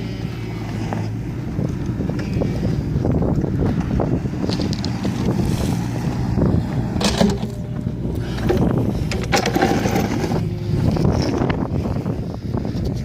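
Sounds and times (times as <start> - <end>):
diesel engine running: 0.0 - 13.0
metallic clanks and knocks: 7.0 - 10.4.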